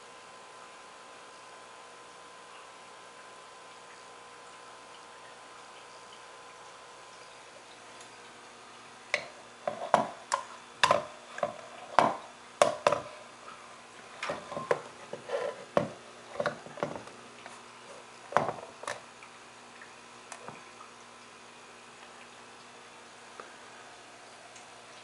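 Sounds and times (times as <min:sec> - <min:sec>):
hard objects knocking and clunking: 0:10.8 - 0:13.1, 0:14.2 - 0:17.1, 0:18.3 - 0:19.0.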